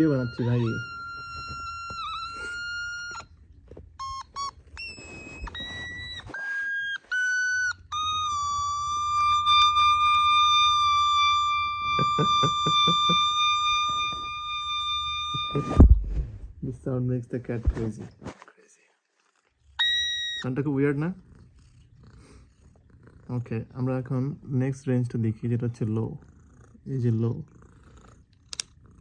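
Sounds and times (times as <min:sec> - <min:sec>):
otamatone high notes: 0:00.0 - 0:03.2, 0:04.0 - 0:15.9.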